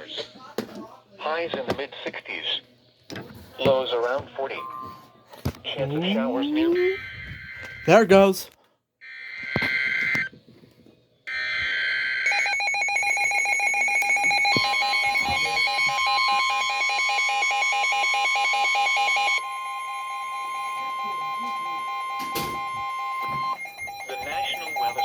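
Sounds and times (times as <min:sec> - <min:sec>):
steady warning alarm tone: 0:11.3 - 0:25.0
rapid pulsing alarm beeps: 0:12.3 - 0:25.0.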